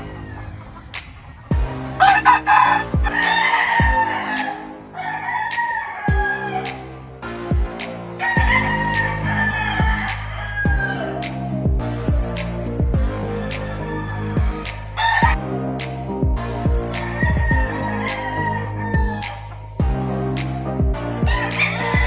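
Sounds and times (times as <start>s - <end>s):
roosters crowing: 0.0s - 0.9s, 2.0s - 6.6s, 8.2s - 11.2s, 13.2s - 15.4s, 17.0s - 19.5s
music with kick-drum beat: 1.5s - 1.9s, 2.9s - 3.2s, 3.8s - 4.0s, 6.1s - 6.3s, 7.5s - 7.8s, 8.4s - 9.2s, 9.8s - 11.0s, 11.6s - 13.2s, 14.4s - 17.8s, 19.0s - 20.1s, 20.8s - 22.0s.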